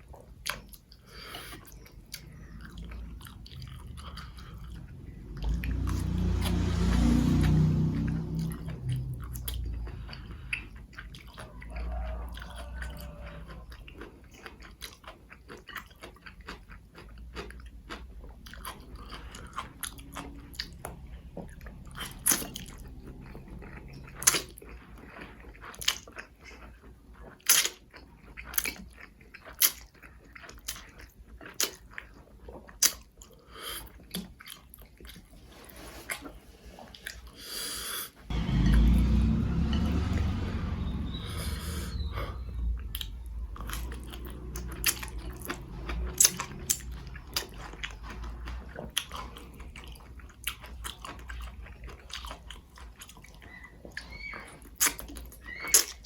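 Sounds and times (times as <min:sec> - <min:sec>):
close-miked noodle chewing: 0:00.0 - 0:56.0
wet mouth smacks and clicks: 0:27.4 - 0:27.8, 0:54.7 - 0:56.0.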